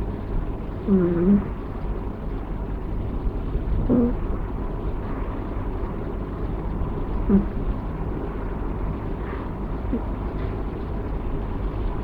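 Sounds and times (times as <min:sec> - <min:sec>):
low steady rumble: 0:00.0 - 0:12.0
kitten snoring squeakily: 0:00.9 - 0:01.5, 0:03.9 - 0:04.2, 0:07.3 - 0:07.6.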